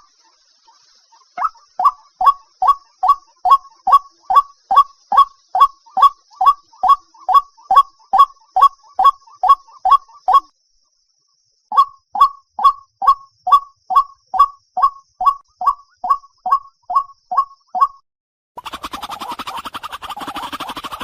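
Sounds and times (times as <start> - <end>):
waterhen calling kook notes: 1.1 - 10.5, 18.6 - 21.0.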